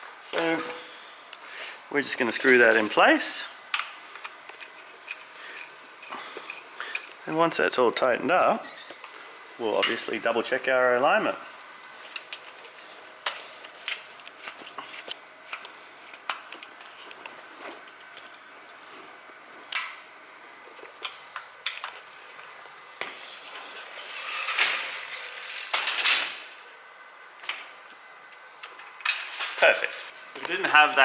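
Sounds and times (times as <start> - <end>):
scraping bursts: 23.1 - 26.4.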